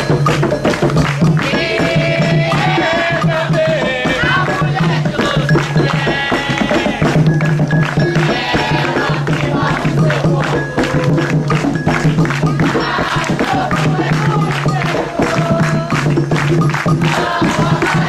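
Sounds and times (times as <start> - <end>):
drums: 0.0 - 18.0
group singing a chant: 0.0 - 18.0.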